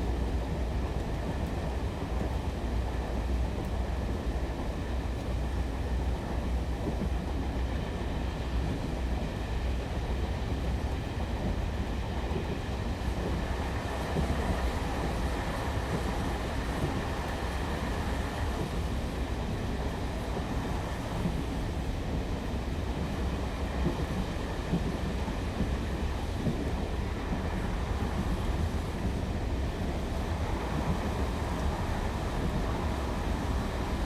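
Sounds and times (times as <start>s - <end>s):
diesel train engine rumble: 0.0s - 34.0s.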